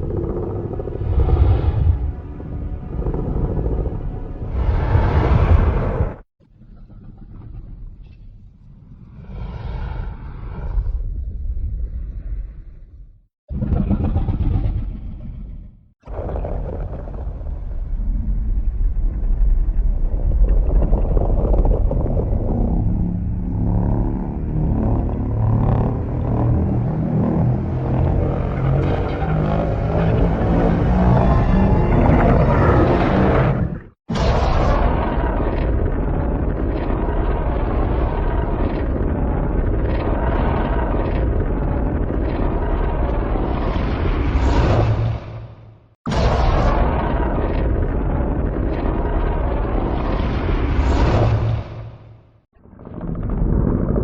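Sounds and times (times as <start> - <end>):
deep rumbling monster sound: 0.0 - 54.0
low droning tone: 22.3 - 32.3.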